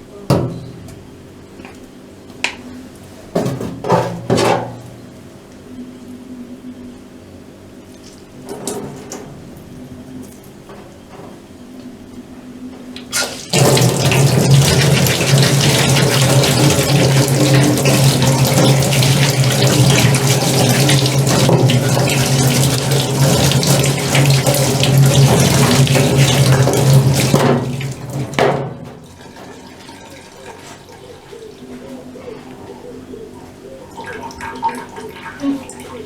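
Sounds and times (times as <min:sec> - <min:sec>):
tap water running and splashing: 0:13.0 - 0:30.9, 0:34.0 - 0:36.0.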